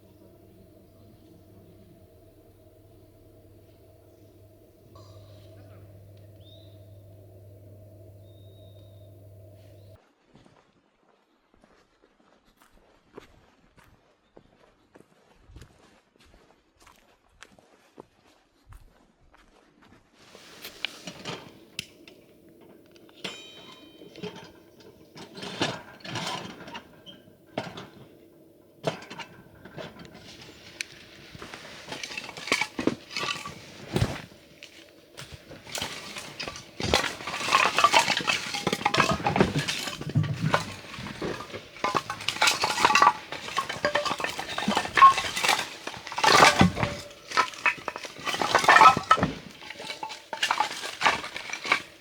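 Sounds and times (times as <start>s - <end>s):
dishes and utensils clinking: 0.0s - 10.0s, 20.4s - 52.0s.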